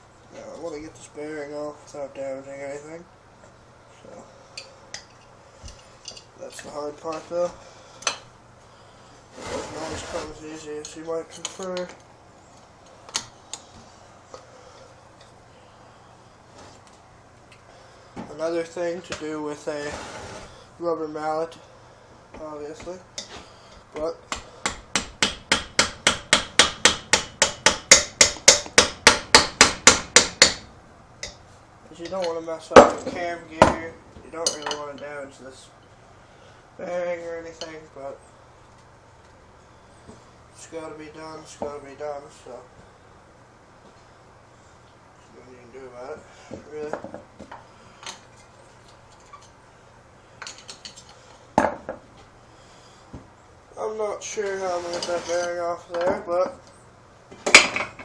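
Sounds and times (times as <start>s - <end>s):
metal tools clinking: 4.6s - 7.3s.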